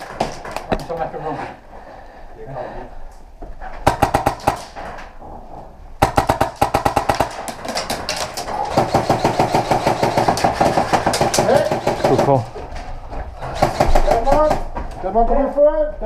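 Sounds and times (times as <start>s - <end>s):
airsoft guns firing full auto: 3.8s - 4.8s, 6.0s - 12.6s, 13.4s - 14.7s.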